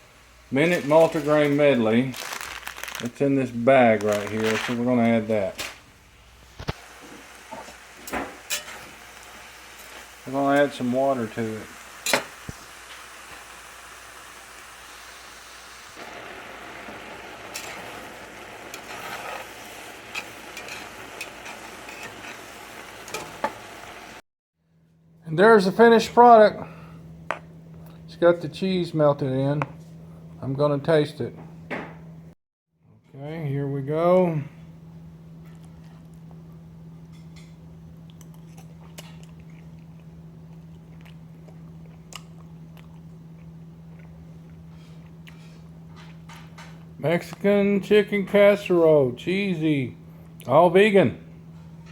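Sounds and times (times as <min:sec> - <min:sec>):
food sizzling in pan: 0:06.6 - 0:24.2
steady low hum: 0:24.7 - 0:51.9
person chewing: 0:38.0 - 0:45.5.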